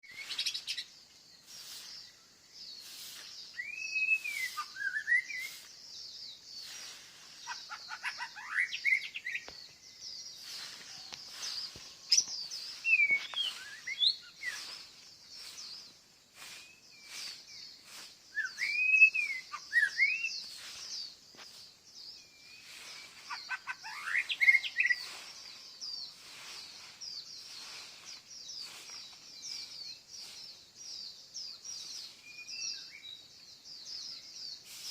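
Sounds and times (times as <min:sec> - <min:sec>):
songbirds chirring chatter: 0:00.0 - 0:34.9
bird whistled phrase: 0:03.6 - 0:05.7, 0:18.4 - 0:20.4, 0:23.4 - 0:25.1.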